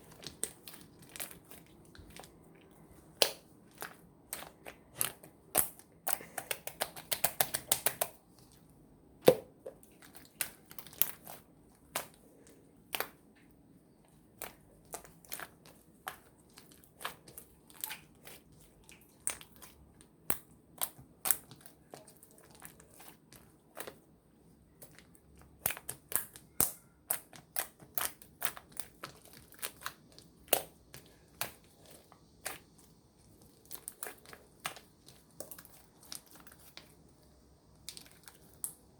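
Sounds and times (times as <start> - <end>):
slime clicking and popping: 3.2 - 8.2, 25.5 - 31.6.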